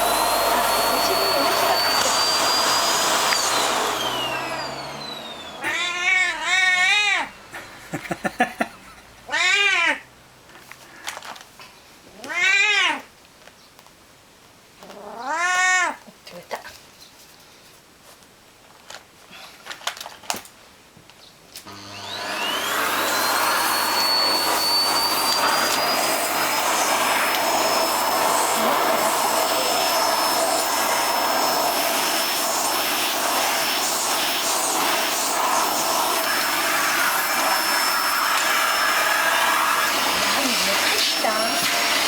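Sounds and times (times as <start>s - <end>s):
vacuum cleaner running: 0.0s - 8.4s, 21.7s - 42.0s.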